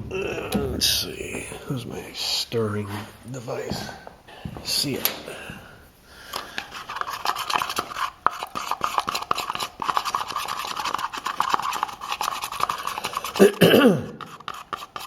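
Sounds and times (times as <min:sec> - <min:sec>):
stick scraping a container: 0:06.6 - 0:13.6, 0:14.2 - 0:15.0.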